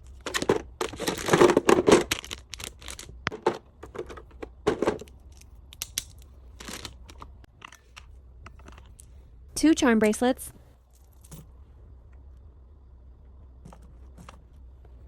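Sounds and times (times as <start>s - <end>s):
packaging crinkling and rustling: 0.0s - 7.3s.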